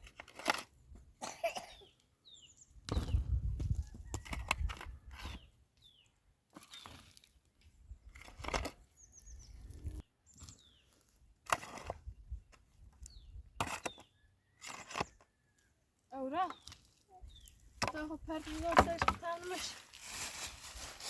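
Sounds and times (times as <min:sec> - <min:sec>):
small birds chirping: 0:01.5 - 0:04.2, 0:05.0 - 0:07.4, 0:08.4 - 0:19.8.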